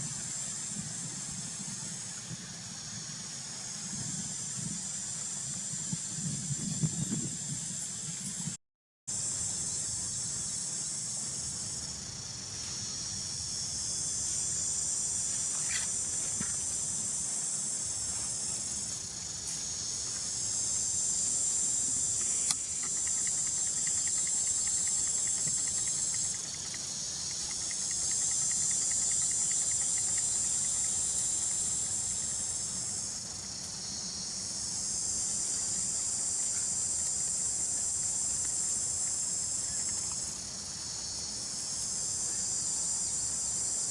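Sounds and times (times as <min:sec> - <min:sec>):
insect chorus buzzing: 0:00.0 - 0:43.9
faint rapid ticking: 0:22.8 - 0:31.7.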